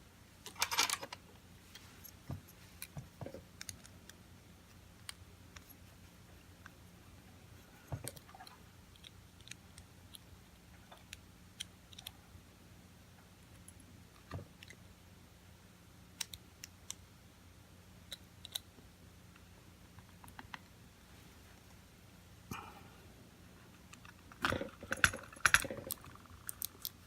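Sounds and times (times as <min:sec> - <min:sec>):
faint low hum: 0:00.0 - 0:27.0
small clicks and taps of parts: 0:00.4 - 0:05.8, 0:07.8 - 0:12.2, 0:13.4 - 0:14.8, 0:16.1 - 0:17.1, 0:18.0 - 0:20.8, 0:23.8 - 0:27.0.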